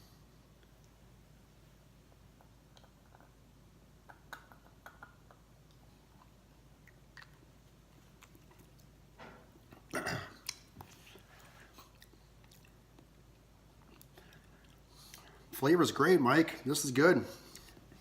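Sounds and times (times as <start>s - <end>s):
lips and tongue smacking: 4.0s - 9.0s, 9.7s - 15.4s.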